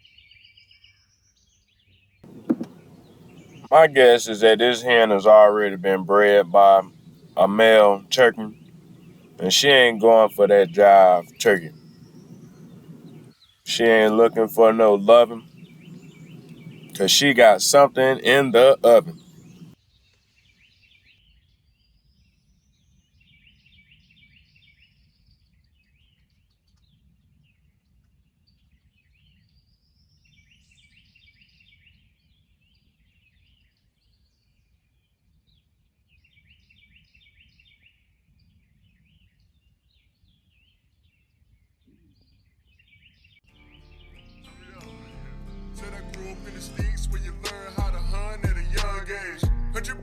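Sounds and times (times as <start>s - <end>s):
songbird singing: 0.0s - 27.0s, 28.5s - 50.0s
low background rumble: 2.2s - 19.8s.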